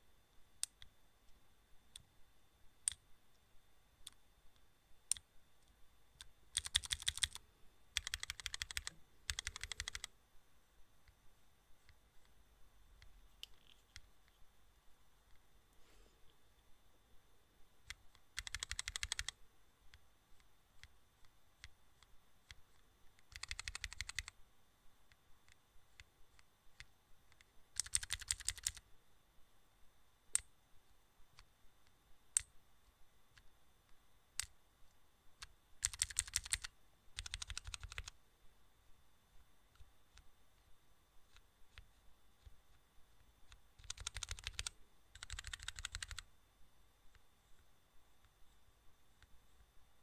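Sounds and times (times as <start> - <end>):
rapid clicking bursts: 6.5 - 7.4, 8.0 - 10.1, 17.9 - 19.4, 23.2 - 24.3, 27.8 - 28.8, 35.4 - 38.2, 43.5 - 46.2.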